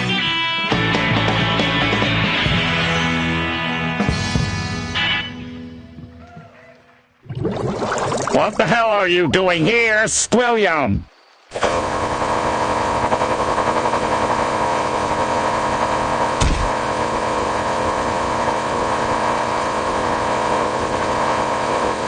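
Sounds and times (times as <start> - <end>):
brief thump: 16.4 - 16.8.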